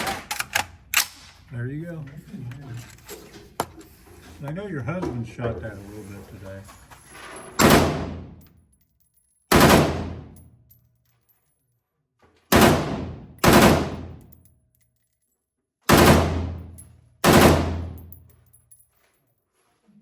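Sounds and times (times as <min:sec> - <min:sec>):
gunshots with ringing echo: 0:07.6 - 0:08.3, 0:09.5 - 0:10.3, 0:12.5 - 0:14.2, 0:15.9 - 0:18.0.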